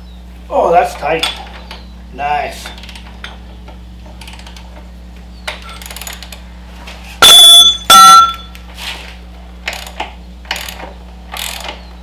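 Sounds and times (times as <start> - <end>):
steady low hum: 0.0 - 12.0
metal tools clanking on metal: 0.9 - 1.8, 5.5 - 6.4.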